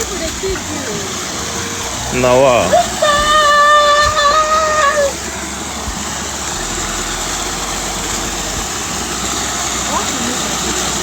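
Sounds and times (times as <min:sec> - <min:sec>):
waterfall rushing: 0:00.0 - 0:11.0
person shouting wooow: 0:02.6 - 0:05.2.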